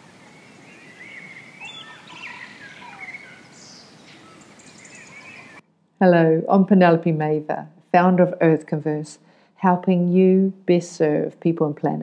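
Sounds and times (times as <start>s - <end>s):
outdoor background hiss: 0.0s - 12.0s
birds chirping and singing: 0.2s - 5.6s.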